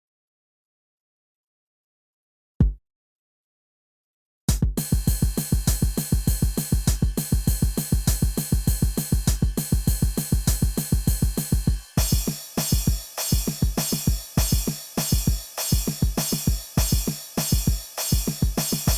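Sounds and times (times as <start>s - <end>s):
drum machine beat: 4.5s - 18.9s
bright hissing cymbals: 4.8s - 18.9s.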